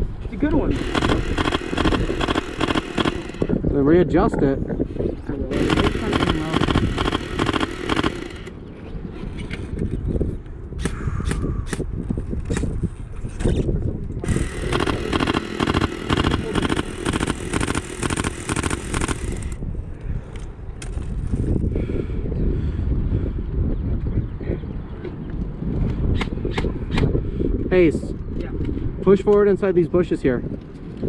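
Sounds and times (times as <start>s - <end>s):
wind rumble on microphone: 0.0s - 31.0s
gear rattling: 0.8s - 3.6s, 5.6s - 8.5s, 14.2s - 19.6s.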